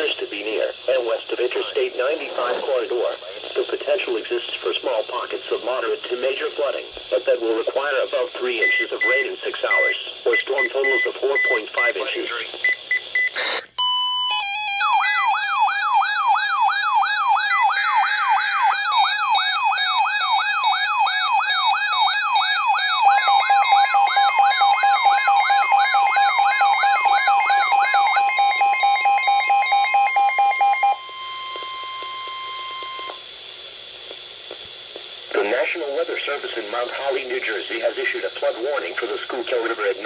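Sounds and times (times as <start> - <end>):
fast electronic beeping: 8.5 - 11.9, 12.6 - 33.2
siren-like rising electronic sweep: 14.3 - 33.2.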